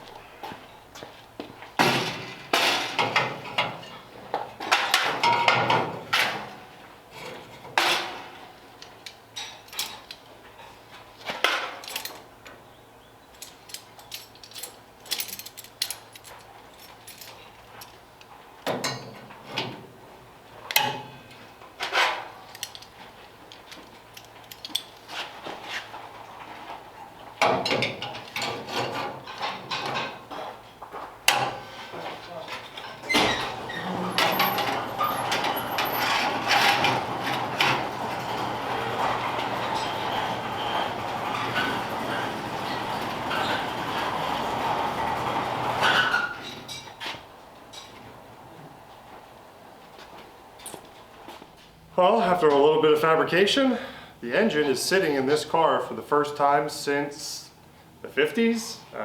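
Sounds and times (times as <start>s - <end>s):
hand tools and metal parts clanking: 0.4s - 12.6s, 13.3s - 19.8s, 20.6s - 48.1s.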